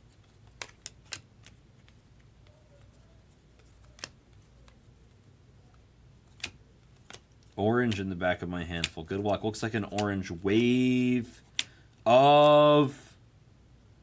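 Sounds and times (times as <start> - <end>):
trading cards snapping: 0.4 - 2.0, 3.5 - 4.8, 6.3 - 8.1, 8.7 - 10.3.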